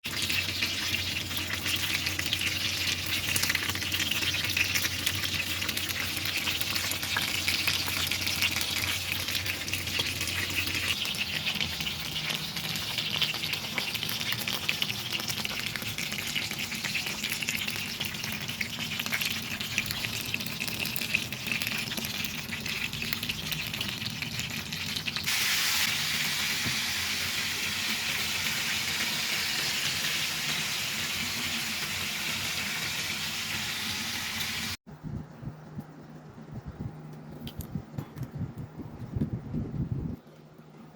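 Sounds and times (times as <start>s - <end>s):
chicken sizzling and popping: 0.0s - 34.8s
low steady hum: 34.9s - 40.9s.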